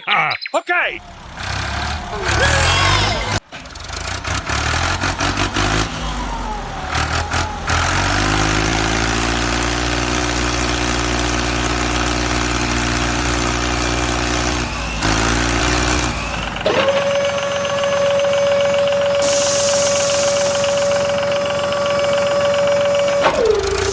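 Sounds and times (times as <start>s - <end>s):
toy tractor engine sound: 1.0s - 23.9s
steady high tone: 17.3s - 23.4s.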